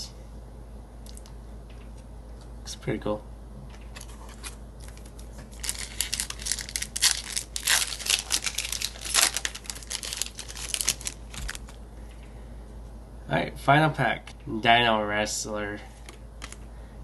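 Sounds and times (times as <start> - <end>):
foil wrapper crinkling: 4.3 - 11.8.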